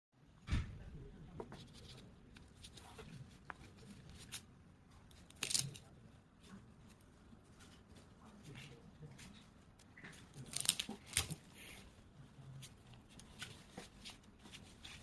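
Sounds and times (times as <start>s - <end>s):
thump: 0.4s - 0.8s
rustling: 1.5s - 15.0s.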